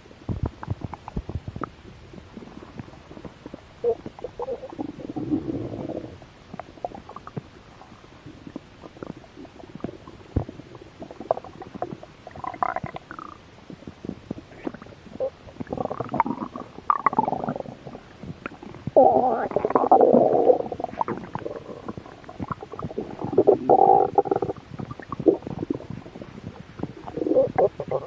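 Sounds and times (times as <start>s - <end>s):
stomach growling and gurgling: 0.0s - 28.0s.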